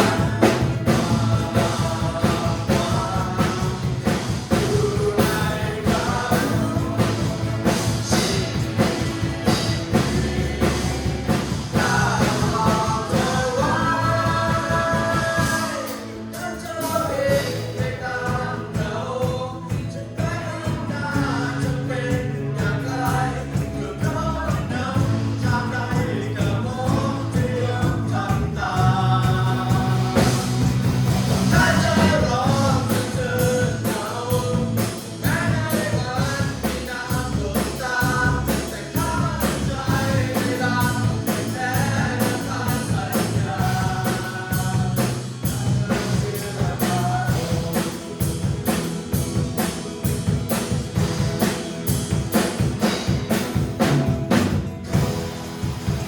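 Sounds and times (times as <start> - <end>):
person singing: 0.0 - 51.6
bass: 0.0 - 56.0
steady drum beat: 0.0 - 56.0
worship band playing: 0.0 - 56.0.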